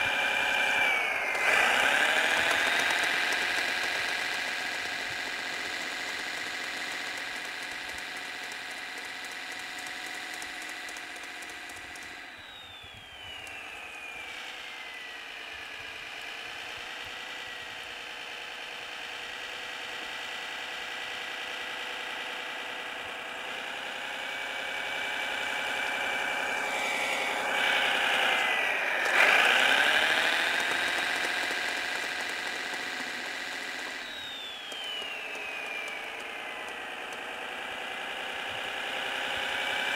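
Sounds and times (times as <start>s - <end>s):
model engine sound running: 0.0s - 39.9s
whine falling in pitch: 11.7s - 17.9s, 33.5s - 39.9s.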